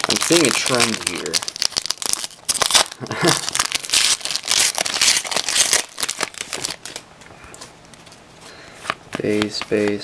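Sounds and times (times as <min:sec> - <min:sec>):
foil wrapper crinkling: 0:00.0 - 0:07.0.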